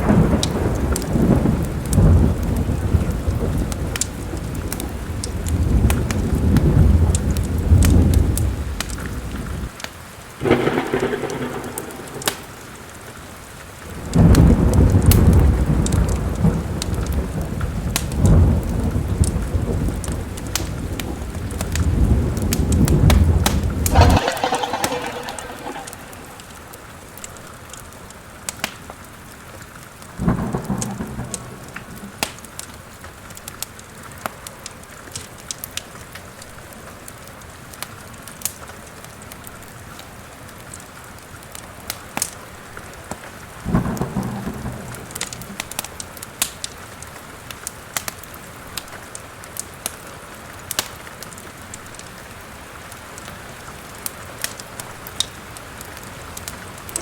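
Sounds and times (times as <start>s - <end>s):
steady rain: 0.0s - 27.2s, 27.9s - 57.0s
thunder rumbling: 10.4s - 16.7s, 18.2s - 27.0s, 43.6s - 45.6s.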